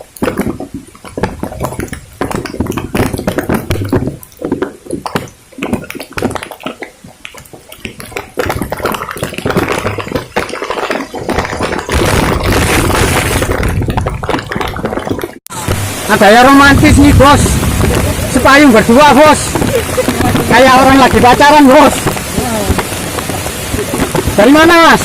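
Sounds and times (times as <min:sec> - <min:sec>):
heavy rain falling: 0:07.3 - 0:25.0
wind on microphone: 0:11.0 - 0:24.5.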